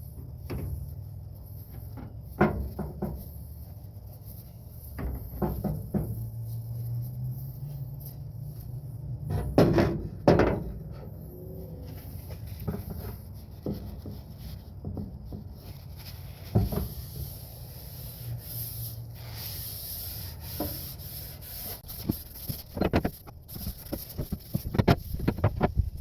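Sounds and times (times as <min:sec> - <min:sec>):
rubbing on wooden handle: 0:11.0 - 0:25.9.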